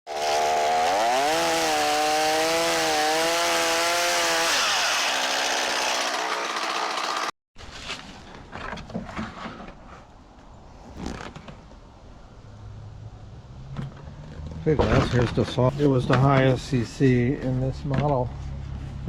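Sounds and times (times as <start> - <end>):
chainsaw running at high revs: 0.1 - 7.3
chainsaw cutting wood: 0.1 - 7.4.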